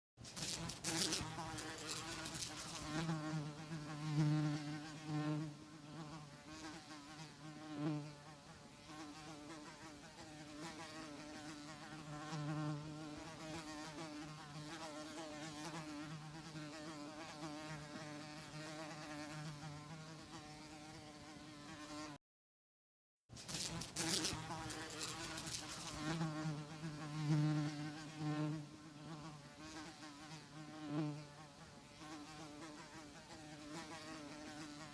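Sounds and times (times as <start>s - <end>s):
housefly buzzing: 0.2s - 22.2s, 23.4s - 34.9s.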